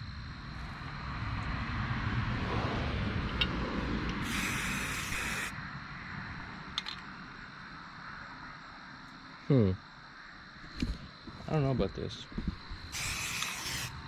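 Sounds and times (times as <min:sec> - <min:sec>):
aerosol spray can hissing: 0:04.2 - 0:05.5, 0:12.9 - 0:14.0.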